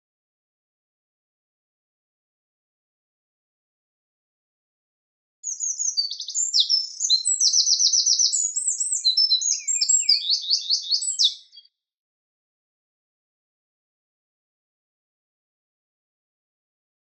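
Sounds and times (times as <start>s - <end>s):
bird singing high trills: 5.4s - 11.7s.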